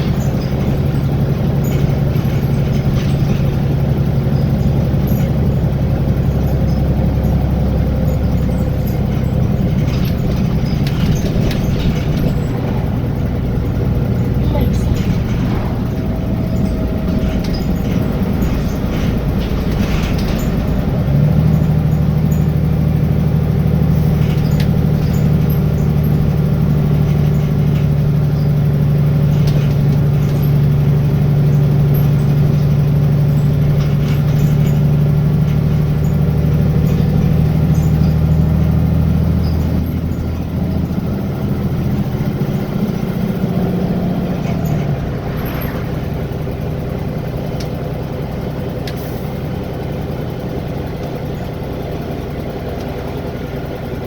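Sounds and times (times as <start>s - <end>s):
bus engine drone: 0.0s - 54.0s.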